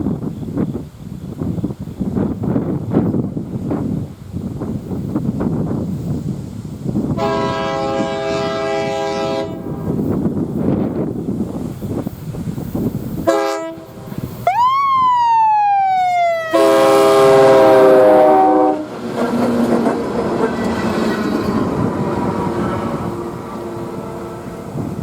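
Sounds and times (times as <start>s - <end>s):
passing train rumble: 0.0s - 25.0s
train horn chord blasts: 7.2s - 9.9s, 13.3s - 14.2s, 16.5s - 19.0s, 21.4s - 25.0s.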